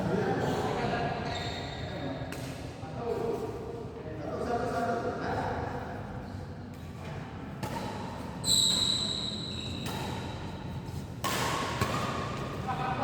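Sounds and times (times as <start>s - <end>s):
badminton racket hitting shuttlecock: 11.2s - 12.6s.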